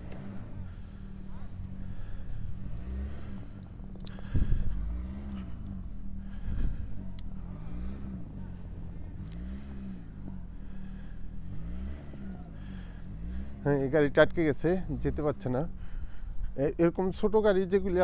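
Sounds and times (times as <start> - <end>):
wheels spinning in snow: 0.0 - 16.0
car engine revving: 0.0 - 18.0.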